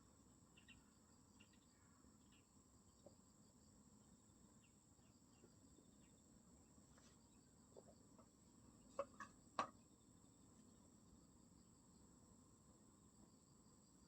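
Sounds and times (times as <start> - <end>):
insects chirring: 0.0 - 14.0.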